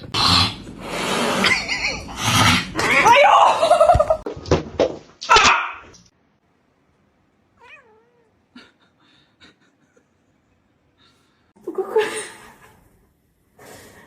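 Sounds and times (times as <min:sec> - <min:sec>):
cat meowing: 0:07.6 - 0:08.4.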